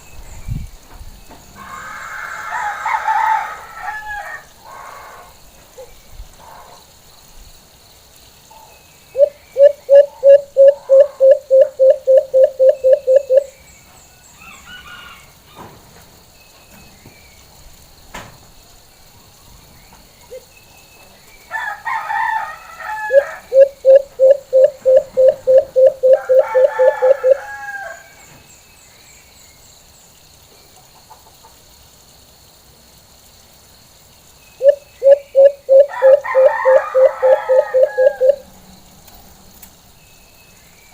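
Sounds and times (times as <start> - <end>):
rooster crowing: 1.6 - 5.3, 14.4 - 15.7, 21.5 - 23.7, 24.9 - 28.2, 35.8 - 38.5
dove cooing rapidly: 9.2 - 13.5, 23.1 - 27.4, 34.6 - 38.4.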